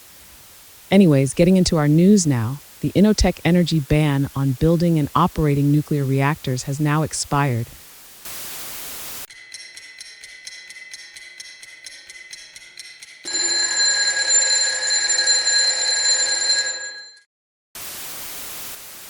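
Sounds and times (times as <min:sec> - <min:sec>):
radio static hiss: 0:00.0 - 0:09.3.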